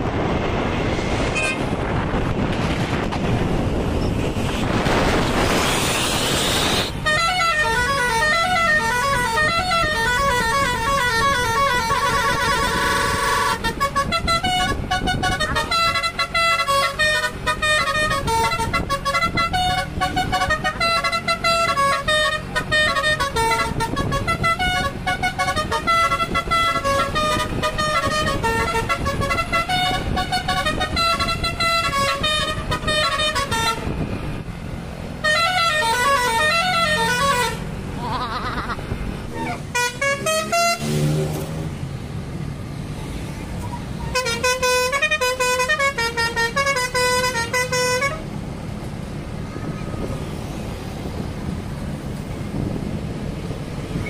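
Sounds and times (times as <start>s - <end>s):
multi-tone bus horn melody: 1.3s - 1.9s, 5.0s - 38.6s, 39.2s - 41.7s, 43.9s - 48.4s.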